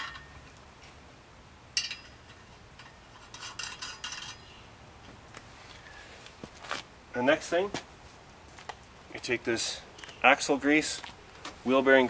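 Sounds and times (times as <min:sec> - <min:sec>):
nuts clinking on steel bolts: 0:00.0 - 0:00.6, 0:01.7 - 0:04.6.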